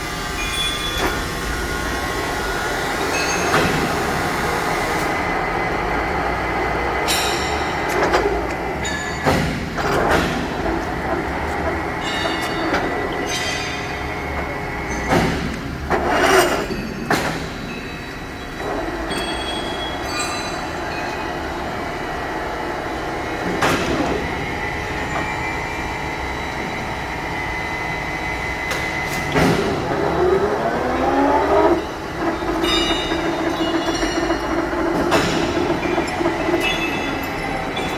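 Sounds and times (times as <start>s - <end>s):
lathe machinery drone: 0.0s - 37.9s
knocks and clatters: 7.0s - 21.5s, 22.6s - 37.9s
rising whine: 24.1s - 35.0s.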